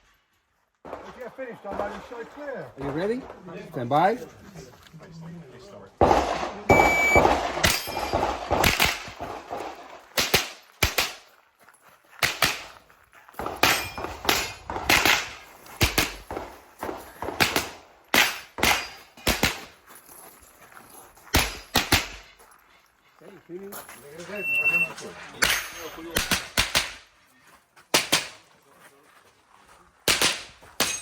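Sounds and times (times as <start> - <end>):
rifle shots: 6.0 - 11.2, 12.2 - 12.8, 13.4 - 19.7, 26.2 - 27.0, 30.1 - 31.0.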